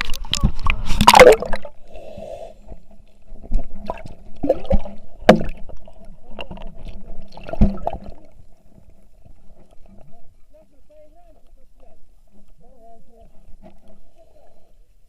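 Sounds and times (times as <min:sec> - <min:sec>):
water sloshing and gurgling: 0:00.0 - 0:10.7.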